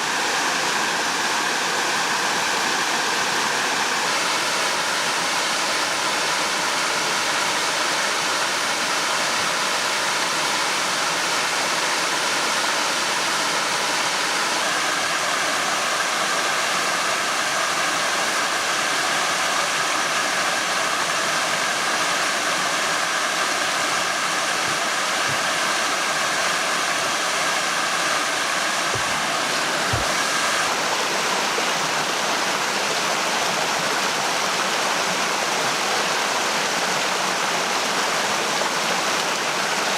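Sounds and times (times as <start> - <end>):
rushing water: 0.0 - 39.9.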